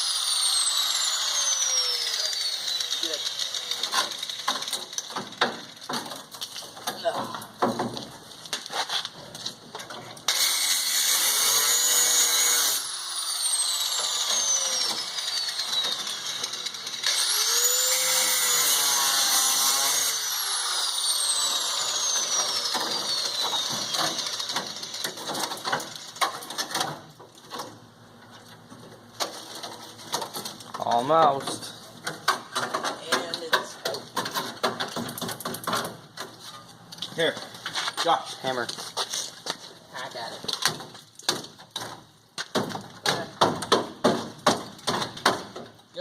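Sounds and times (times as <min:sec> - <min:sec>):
power tool cutting metal: 0:00.0 - 0:05.9, 0:10.3 - 0:26.3.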